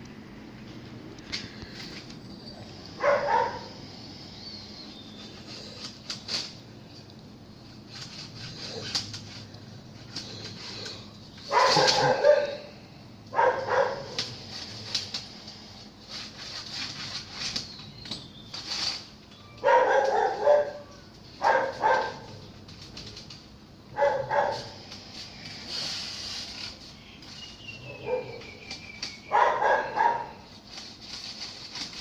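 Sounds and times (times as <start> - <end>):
dog barking: 3.0 - 3.7, 11.5 - 14.2, 19.6 - 22.3, 23.9 - 24.8, 27.9 - 28.4, 29.3 - 30.4.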